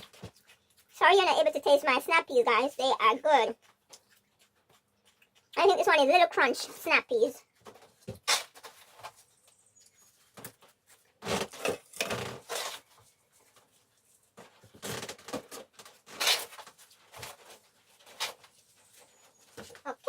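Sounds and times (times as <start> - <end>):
rustling and light knocks: 7.6 - 19.9.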